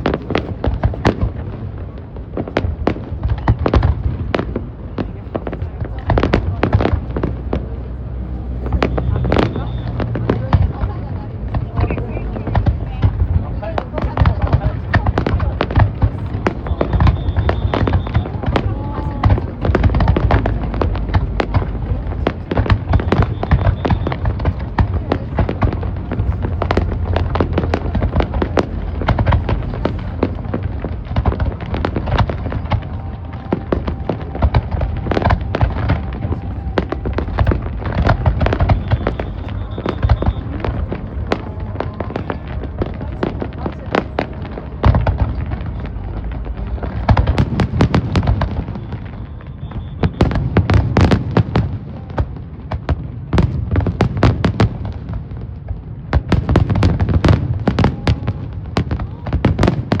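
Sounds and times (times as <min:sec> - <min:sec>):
fireworks bangs and crackles: 0:00.0 - 1:00.0
firework whistles: 0:08.5 - 0:10.2, 0:16.1 - 0:19.2, 0:22.6 - 0:24.8, 0:32.0 - 0:41.2, 0:48.0 - 0:51.4.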